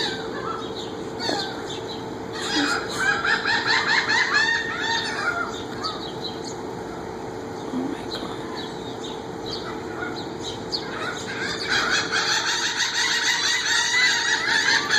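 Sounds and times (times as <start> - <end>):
flock of birds calling: 0.0 - 14.9.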